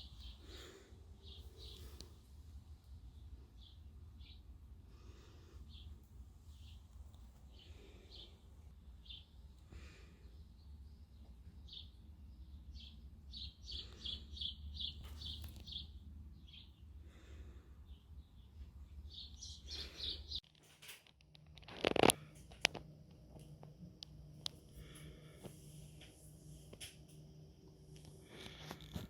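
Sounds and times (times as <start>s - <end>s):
small birds chirping: 0.0s - 20.5s
low steady hum: 0.0s - 29.0s.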